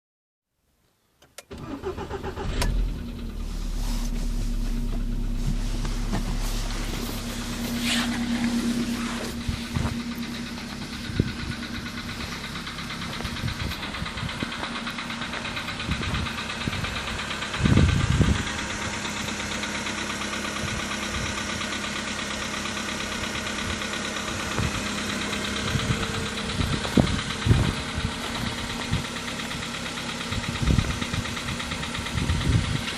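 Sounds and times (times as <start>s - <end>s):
car engine idling with metallic knock: 2.5s - 32.9s
loud thumps: 4.6s - 11.6s.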